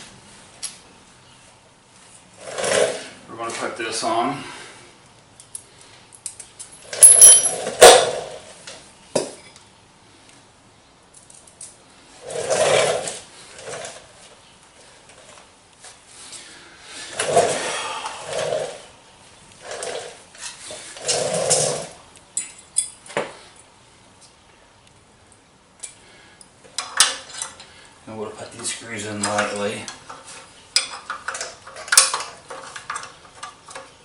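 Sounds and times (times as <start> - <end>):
metal parts clanking: 6.2 - 8.2, 29.2 - 33.9.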